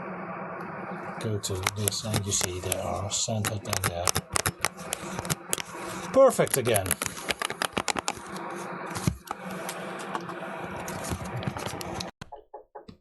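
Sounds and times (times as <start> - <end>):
rapid clicking and tapping: 1.6 - 8.4.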